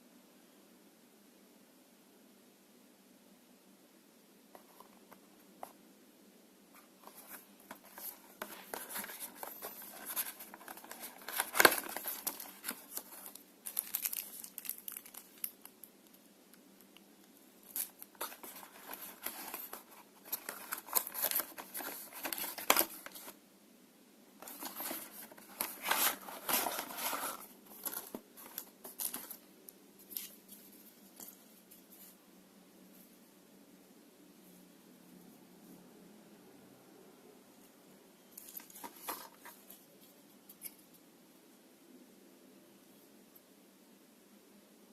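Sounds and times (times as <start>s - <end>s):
packaging crinkling and tearing: 7.3s - 15.8s, 17.6s - 23.4s, 24.4s - 29.4s.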